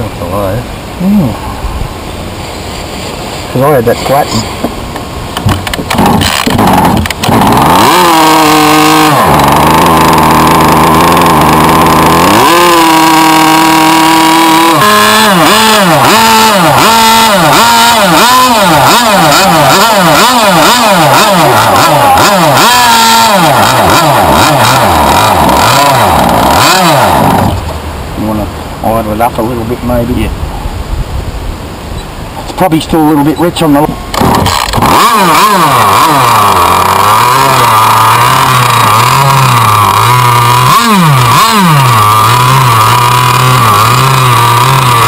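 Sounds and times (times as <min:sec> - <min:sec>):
two-stroke model boat engine revving: 0:05.4 - 0:28.5, 0:33.8 - 0:45.0.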